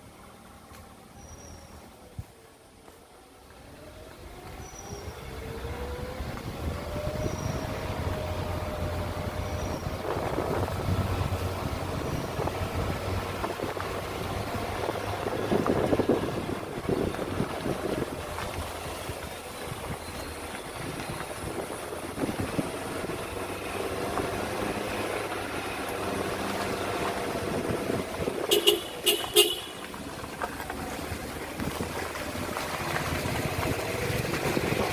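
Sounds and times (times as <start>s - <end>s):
vehicle engine and road noise: 0.0s - 34.9s
vehicle horn toots: 28.4s - 29.9s.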